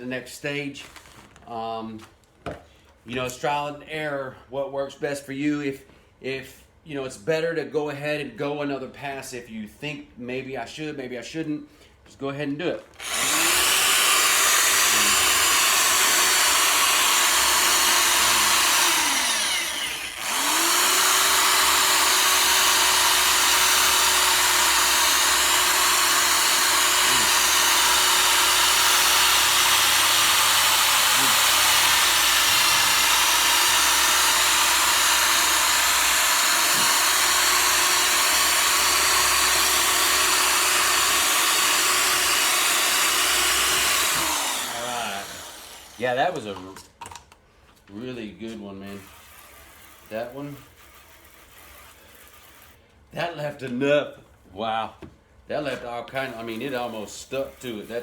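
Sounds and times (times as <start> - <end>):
cordless drill sanding plastic: 13.0 - 52.9, 55.6 - 58.0.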